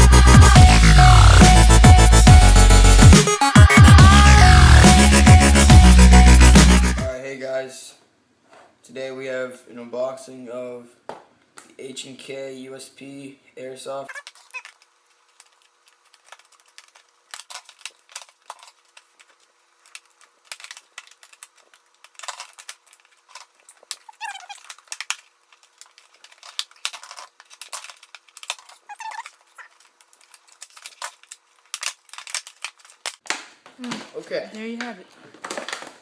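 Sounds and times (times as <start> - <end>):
cardboard and plastic packaging rustling: 14.1 - 36.0
short squeaks: 24.0 - 24.8, 28.7 - 29.8.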